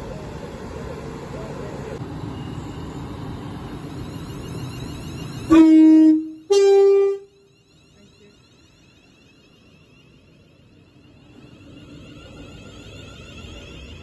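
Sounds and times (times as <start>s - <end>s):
train rumbling past: 0.0s - 14.0s
two-tone train horn: 5.5s - 7.5s.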